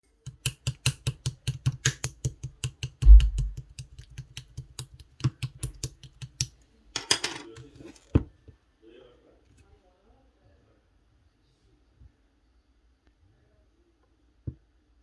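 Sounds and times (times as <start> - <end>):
heavy thump: 3.0 - 3.6.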